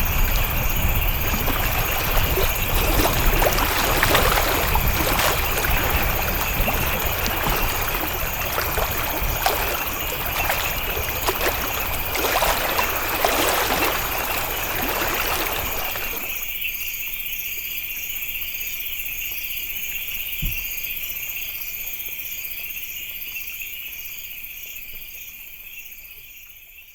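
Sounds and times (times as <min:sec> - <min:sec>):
water splashing and running: 0:00.0 - 0:16.5
insects chirping: 0:00.0 - 0:26.9.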